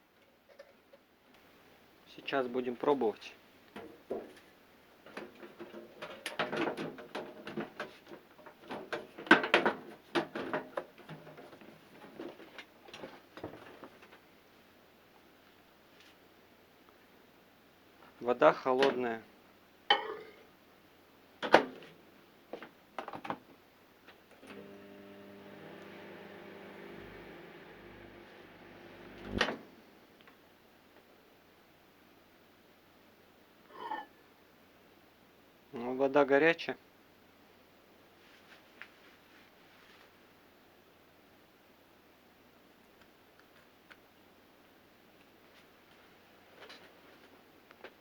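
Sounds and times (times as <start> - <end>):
microwave oven humming: 24.4 - 30.0.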